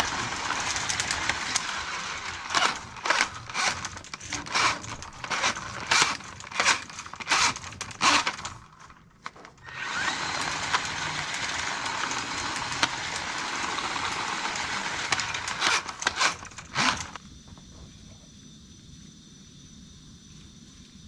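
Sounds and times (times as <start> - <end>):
drain-cleaning machine running: 0.0 - 8.5, 9.6 - 17.2
cable and tools clattering: 0.0 - 17.2.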